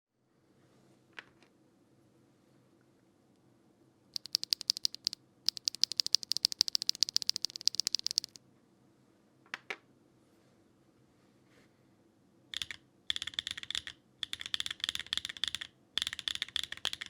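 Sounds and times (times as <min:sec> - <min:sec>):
mechanical keyboard typing: 0:04.2 - 0:08.4, 0:12.5 - 0:17.0.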